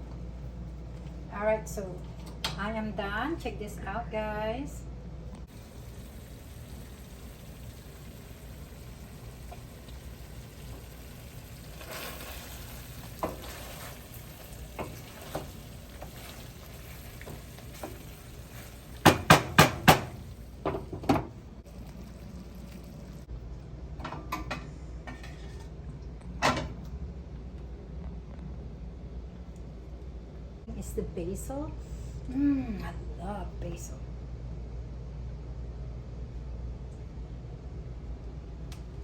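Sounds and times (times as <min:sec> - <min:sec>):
utensil stirring a pot: 0:11.7 - 0:20.0.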